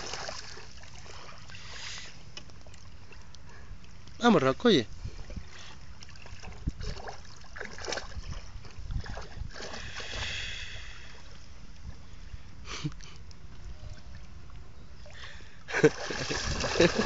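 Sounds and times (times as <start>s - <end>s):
water splashing and sloshing: 0.0s - 17.0s
wind rumble on microphone: 4.8s - 12.7s, 16.2s - 17.0s.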